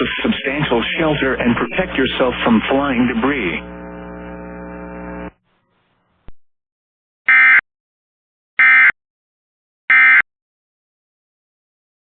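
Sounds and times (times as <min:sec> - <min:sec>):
loud buzzing data bursts: 0:00.5 - 0:05.3.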